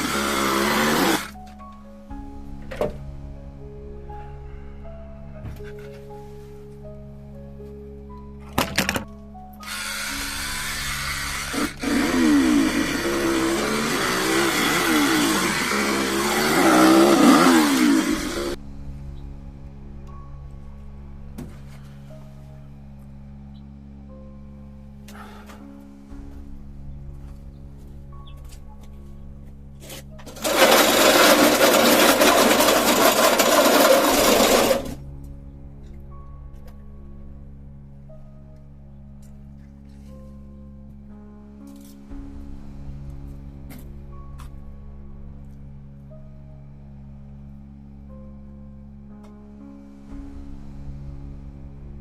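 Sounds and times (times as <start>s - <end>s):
chainsaw engine revving: 0.0s - 1.4s, 9.6s - 18.6s, 30.3s - 35.0s
quiet background music: 0.0s - 52.0s.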